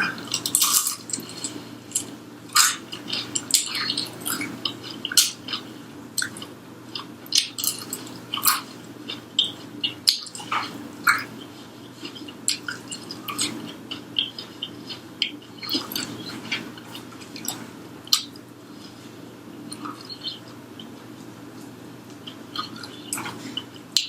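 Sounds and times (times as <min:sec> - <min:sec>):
crunchy chewing: 0:00.0 - 0:24.0.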